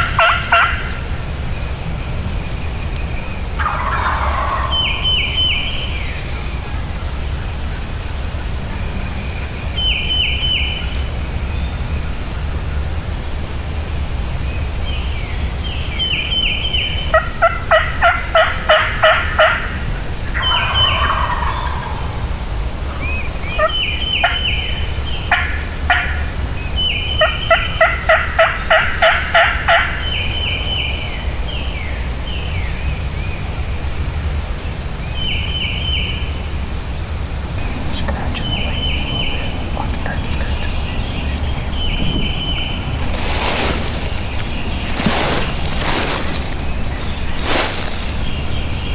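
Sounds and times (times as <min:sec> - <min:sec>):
wild turkeys calling: 0:00.0 - 0:01.4, 0:03.2 - 0:07.5, 0:15.7 - 0:32.0, 0:35.1 - 0:48.9
low background rumble: 0:19.3 - 0:48.9.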